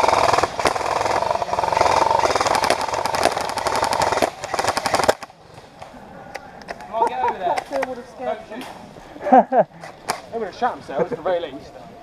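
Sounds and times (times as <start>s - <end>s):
airsoft rifle firing full-auto: 0.0s - 5.3s.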